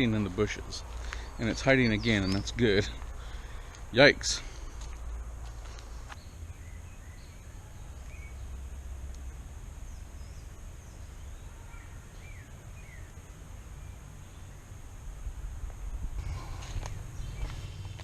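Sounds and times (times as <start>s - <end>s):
bird chirps: 1.0s - 3.6s, 5.8s - 8.6s, 9.8s - 14.7s, 16.3s - 18.0s.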